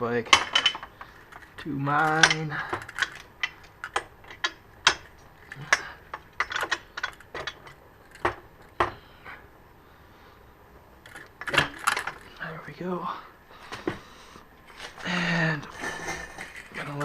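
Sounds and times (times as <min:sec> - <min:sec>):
metallic clicks and clanks: 0:00.3 - 0:09.0, 0:11.0 - 0:12.4, 0:15.6 - 0:17.0.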